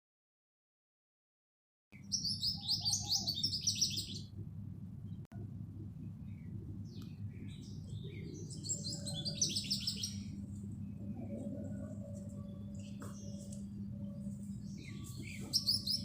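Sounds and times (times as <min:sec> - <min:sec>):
small bird chirping: 0:02.0 - 0:04.3, 0:06.2 - 0:16.0
steady low hum: 0:02.0 - 0:16.0.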